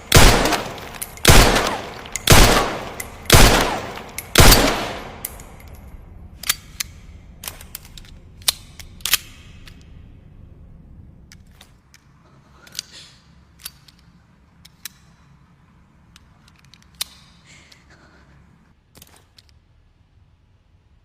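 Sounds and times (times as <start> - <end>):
handgun action clicks: 0.0 - 10.0, 13.5 - 15.2, 16.1 - 17.8.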